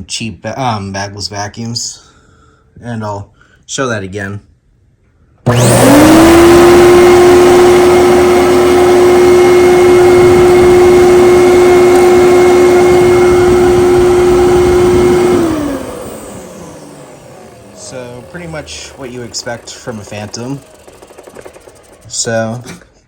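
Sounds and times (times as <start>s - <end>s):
vacuum cleaner motor whining: 5.5s - 22.6s.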